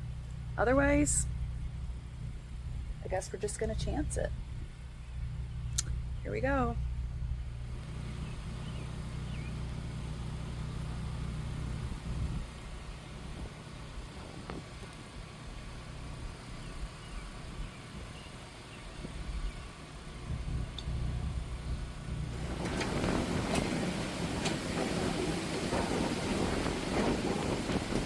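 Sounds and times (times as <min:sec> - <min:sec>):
wind buffeting the microphone: 0:11.6 - 0:28.0.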